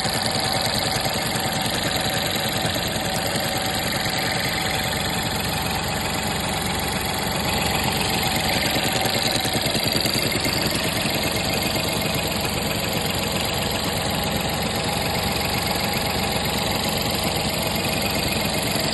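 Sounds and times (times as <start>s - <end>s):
car engine idling: 0.0s - 18.9s.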